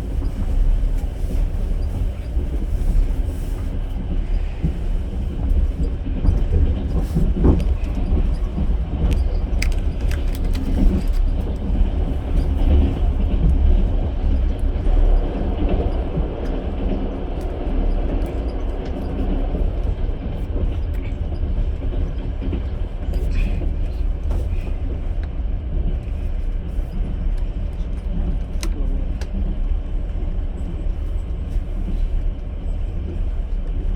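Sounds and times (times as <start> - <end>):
train carriage rumbling on track: 0.0 - 33.9
wheels clicking and knocking: 6.2 - 16.6.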